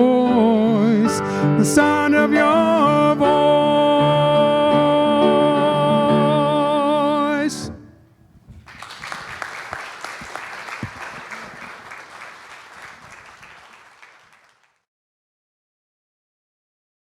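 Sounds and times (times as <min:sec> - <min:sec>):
man singing: 0:00.0 - 0:07.9
piano: 0:00.0 - 0:13.3
congregation applauding: 0:08.4 - 0:14.8.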